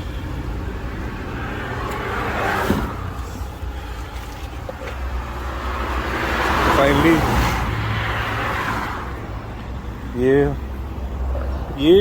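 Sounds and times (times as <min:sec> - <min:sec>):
vehicle passing by: 0:00.0 - 0:04.2, 0:04.9 - 0:11.8
motorway traffic rushing: 0:00.0 - 0:12.0.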